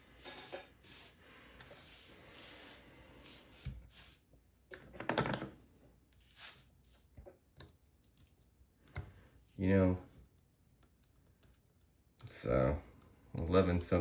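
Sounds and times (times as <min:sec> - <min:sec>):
tools sliding on workbench: 0:00.2 - 0:04.2.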